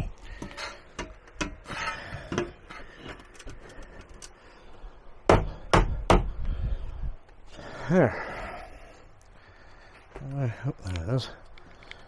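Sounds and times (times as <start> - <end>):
sharp knocks: 5.3 - 6.4.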